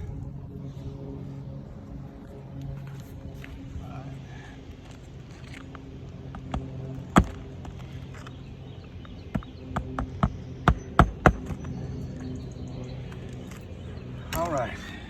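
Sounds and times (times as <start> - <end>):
steady low hum: 0.0 - 15.0
hammer knocking on shingles: 9.3 - 11.6.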